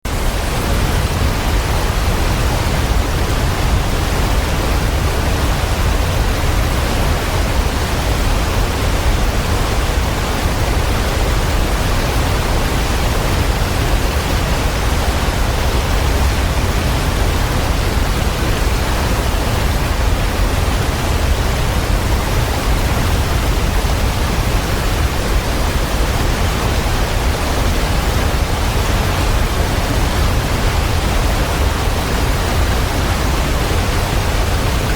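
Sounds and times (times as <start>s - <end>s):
rushing water: 0.0s - 34.9s.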